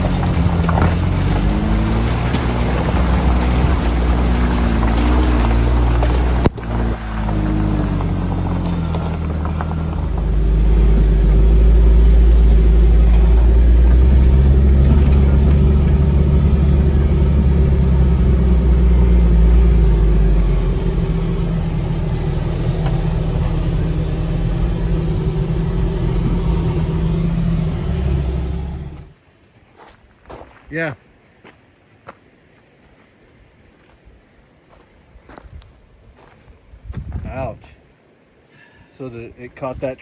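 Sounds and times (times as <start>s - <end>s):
engine running under load: 0.0s - 29.2s.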